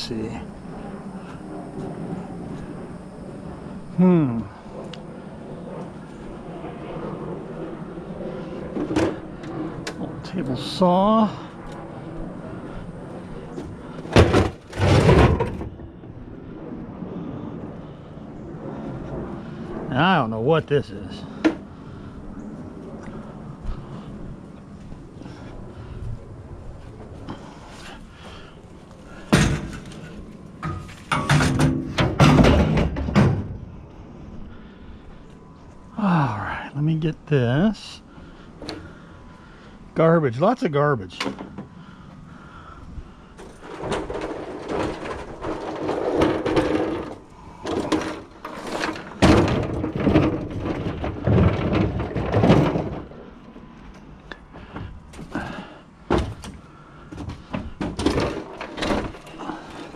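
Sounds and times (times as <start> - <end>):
scrap metal clanking and banging: 13.5 - 16.2, 27.2 - 33.7, 43.3 - 59.9.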